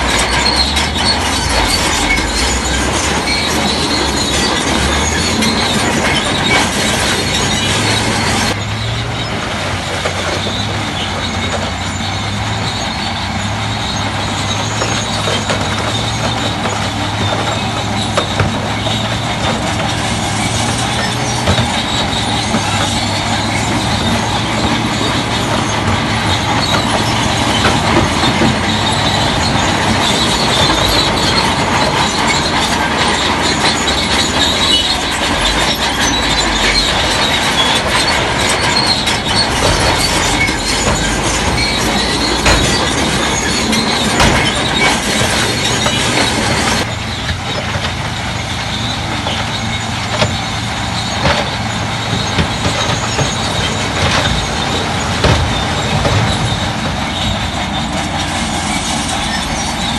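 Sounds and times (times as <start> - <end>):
diesel engine running: 0.0 - 59.9
steel tracks clanking and squealing: 0.0 - 59.9.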